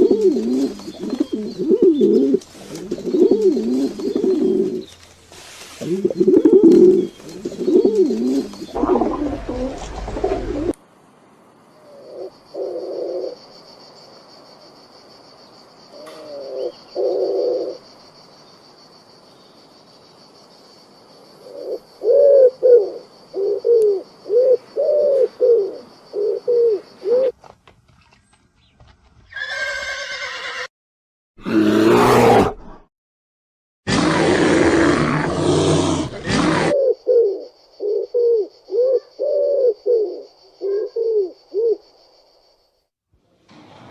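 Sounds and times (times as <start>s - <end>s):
animal calls: 5.8s - 10.7s.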